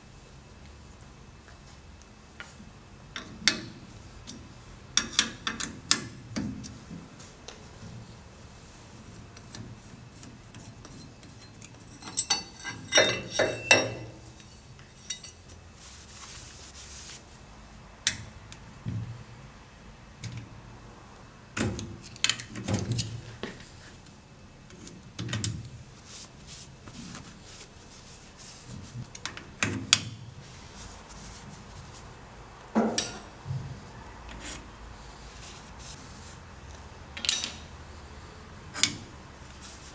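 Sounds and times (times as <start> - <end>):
metallic clinks and knocks: 10.8 - 15.4.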